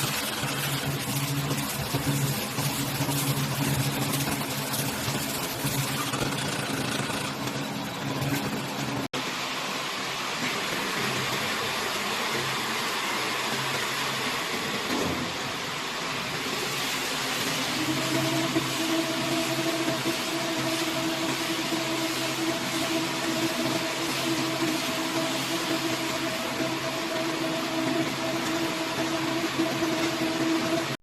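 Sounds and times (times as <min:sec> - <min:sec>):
farm machinery running: 0:00.0 - 0:09.1, 0:16.3 - 0:31.0.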